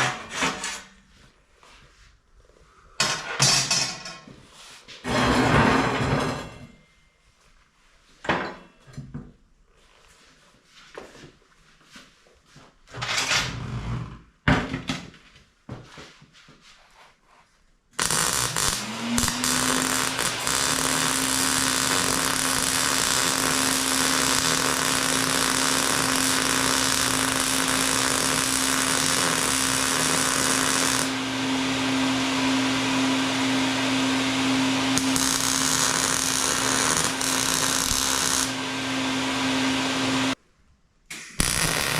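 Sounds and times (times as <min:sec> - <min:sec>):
angle grinder grinding metal: 0:18.0 - 0:32.0, 0:34.2 - 0:40.4, 0:41.4 - 0:41.9.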